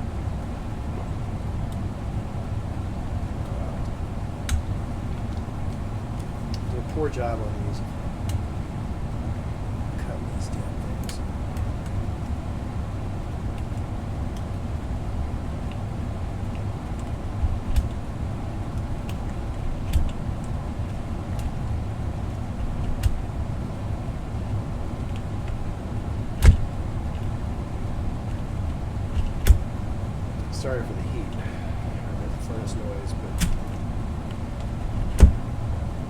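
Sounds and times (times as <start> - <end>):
furnace rumbling: 0.0 - 11.8, 14.9 - 36.0
sharp clicks: 3.4 - 6.7, 16.5 - 18.0, 26.3 - 27.3, 32.8 - 35.5.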